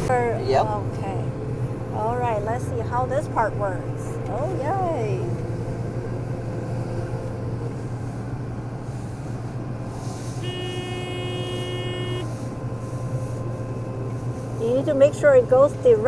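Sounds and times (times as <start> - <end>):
combine harvester drone: 0.0 - 16.0.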